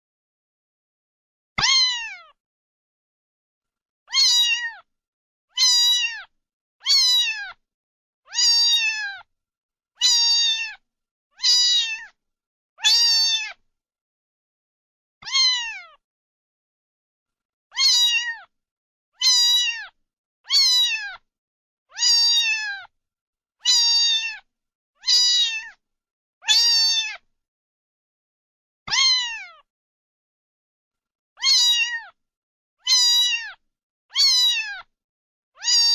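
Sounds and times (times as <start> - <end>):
kitten meowing: 1.6 - 2.3, 4.1 - 4.9, 5.5 - 7.6, 8.3 - 9.3, 10.0 - 10.8, 11.4 - 12.2, 12.8 - 13.6, 15.2 - 16.0, 17.7 - 18.5, 19.2 - 21.2, 21.9 - 22.9, 23.6 - 25.8, 26.4 - 27.2, 28.9 - 29.6, 31.4 - 32.2, 32.8 - 34.9, 35.6 - 35.9.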